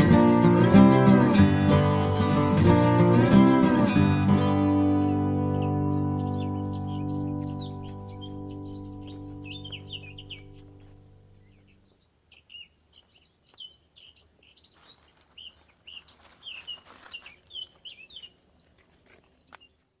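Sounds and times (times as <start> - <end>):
background music: 0.0 - 11.6
songbirds chirping: 0.0 - 20.0.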